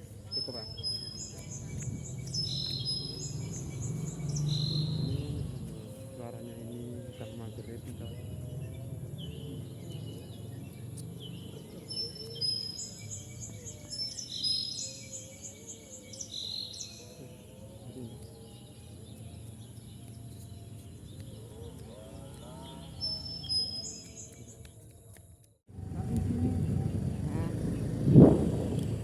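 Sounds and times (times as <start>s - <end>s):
wind rumble: 0.0s - 6.0s, 25.7s - 29.0s
small birds chirping: 0.0s - 29.0s.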